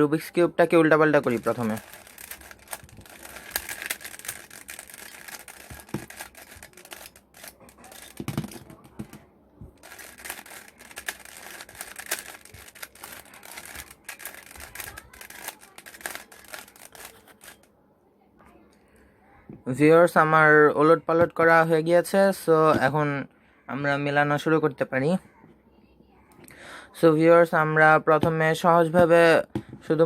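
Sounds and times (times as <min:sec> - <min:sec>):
plastic puzzle cube clicks and rattles: 0:01.0 - 0:17.7.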